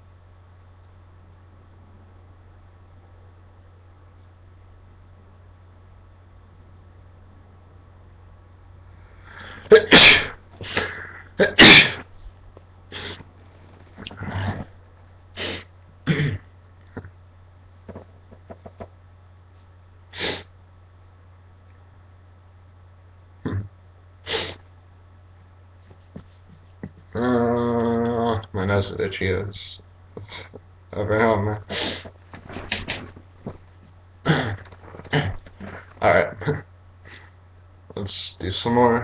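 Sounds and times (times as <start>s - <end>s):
man sneezing loudly: 9.6s - 12.0s, 34.3s - 36.6s
short bursts of breath: 15.4s - 15.7s, 24.3s - 24.6s.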